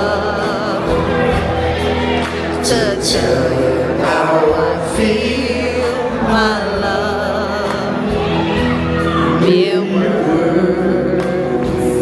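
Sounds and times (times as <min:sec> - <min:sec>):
live soul band playing: 0:00.0 - 0:12.0
person singing: 0:00.0 - 0:12.0.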